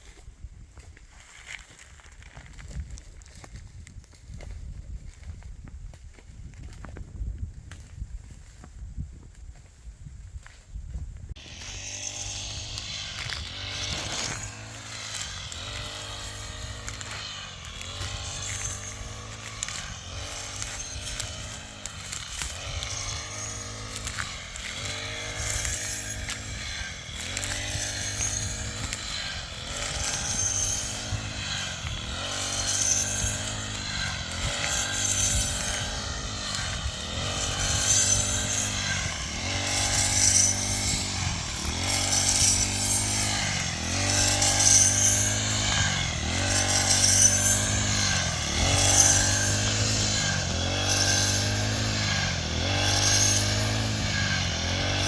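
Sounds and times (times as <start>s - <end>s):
small engine running: 11.4s - 55.0s.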